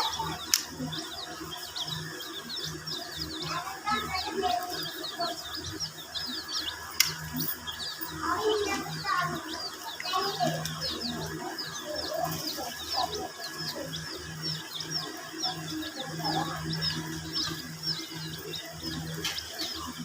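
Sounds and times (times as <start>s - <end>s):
baby chicks peeping: 0.0s - 20.0s
sharp clicks: 0.4s - 1.0s, 6.2s - 8.0s, 16.8s - 19.8s.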